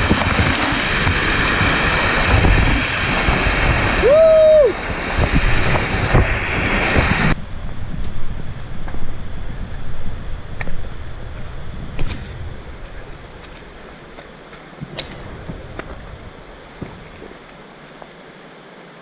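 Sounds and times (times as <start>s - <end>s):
waterfall rushing: 0.0s - 7.4s.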